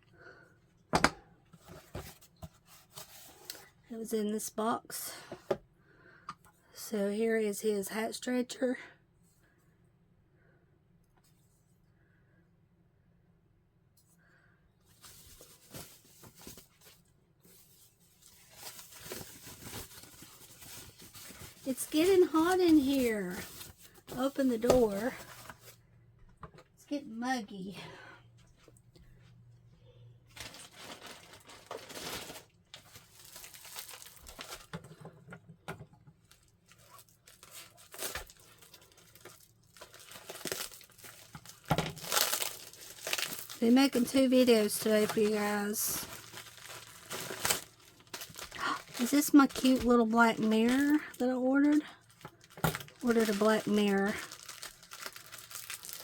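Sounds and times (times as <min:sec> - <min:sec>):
packaging rustling and crinkling: 0:01.6 - 0:03.7, 0:14.9 - 0:25.8, 0:30.3 - 0:35.4, 0:36.2 - 0:56.0.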